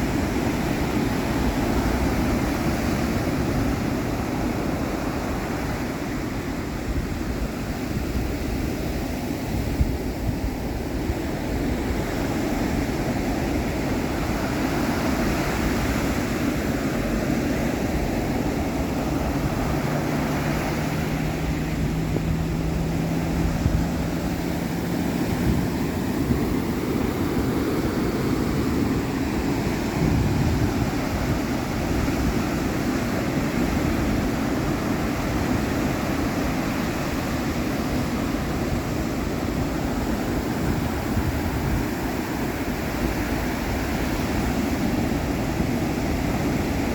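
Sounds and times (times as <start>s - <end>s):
ocean surf breaking: 0.0s - 46.9s.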